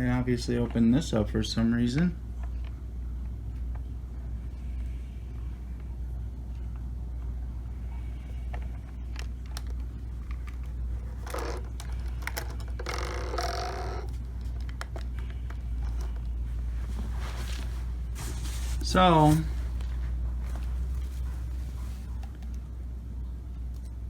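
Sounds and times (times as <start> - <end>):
steady low hum: 0.0 - 24.0
controller rustling and scraping: 15.8 - 22.5.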